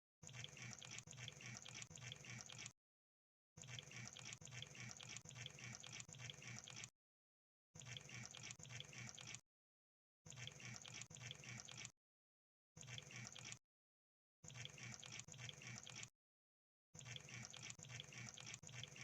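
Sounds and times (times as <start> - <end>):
crab wet clicking and bubbling: 0.2 - 2.7, 3.6 - 6.9, 7.8 - 9.4, 10.3 - 11.9, 12.8 - 13.6, 14.4 - 16.1, 17.0 - 19.0.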